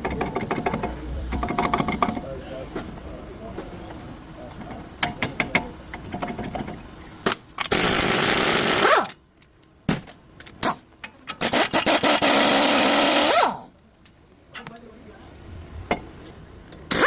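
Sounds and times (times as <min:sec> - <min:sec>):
power tool motor: 0:07.7 - 0:09.1, 0:11.4 - 0:13.6.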